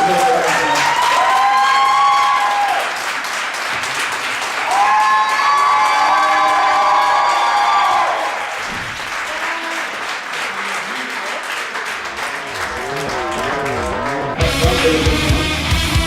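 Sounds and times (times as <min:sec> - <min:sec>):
crowd applauding: 0:00.0 - 0:16.0
loud rock music with electric guitar: 0:14.4 - 0:16.0.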